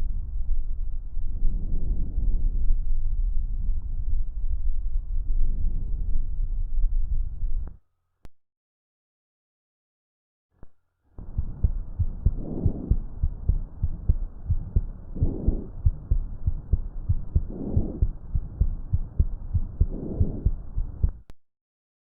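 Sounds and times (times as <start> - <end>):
thumping heartbeat: 11.2 - 21.3
breathing through stethoscope: 12.3 - 13.1, 14.6 - 16.6, 17.2 - 21.0.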